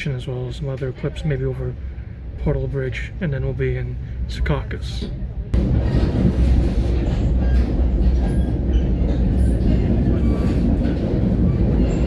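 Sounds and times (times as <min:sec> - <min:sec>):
train wheels rumbling on rail: 0:00.5 - 0:12.0.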